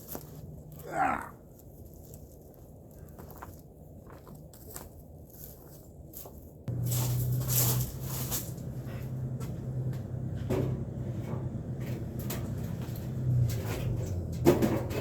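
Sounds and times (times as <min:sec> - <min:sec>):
metal and wood knocking: 0:06.7 - 0:15.0
steady low hum: 0:06.7 - 0:15.0.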